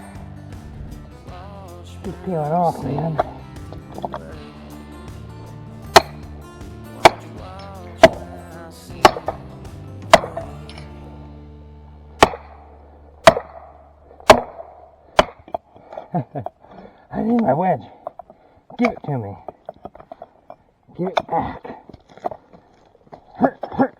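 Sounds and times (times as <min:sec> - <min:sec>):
wedges being struck: 0:02.1 - 0:04.4, 0:05.1 - 0:10.9, 0:12.2 - 0:15.7.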